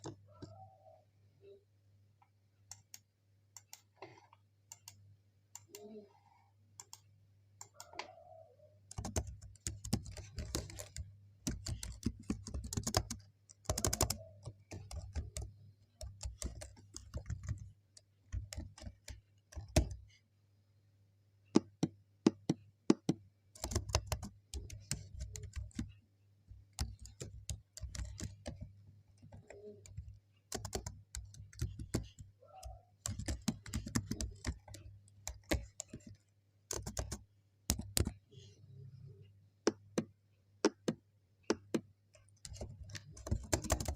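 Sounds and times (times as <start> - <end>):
typing on computer keyboard: 8.9 - 20.2, 21.6 - 38.2, 39.7 - 43.9.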